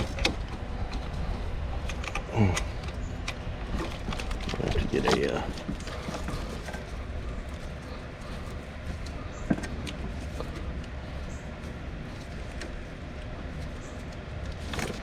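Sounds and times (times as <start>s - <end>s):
steady low rumble: 0.0s - 15.0s
hand tools clicking and knocking: 1.9s - 11.0s.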